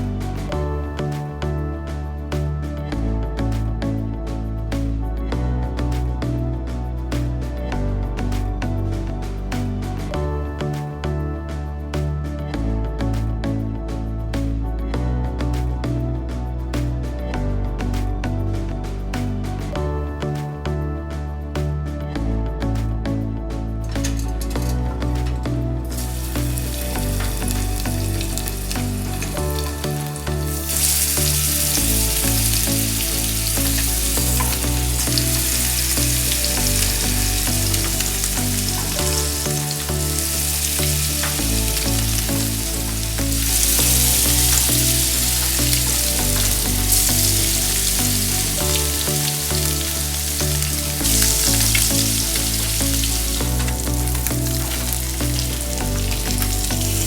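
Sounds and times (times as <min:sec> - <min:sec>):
background music with bass: 0:00.0 - 0:57.0
tofu sizzling in a pan: 0:26.2 - 0:57.0.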